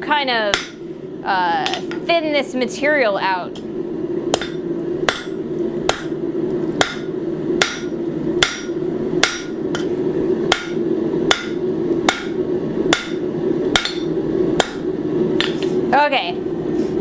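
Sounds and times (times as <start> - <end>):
steady low hum: 0.0 - 17.0
hammer striking steel on anvil: 0.5 - 0.8, 4.3 - 6.2, 6.8 - 9.9, 10.5 - 14.8.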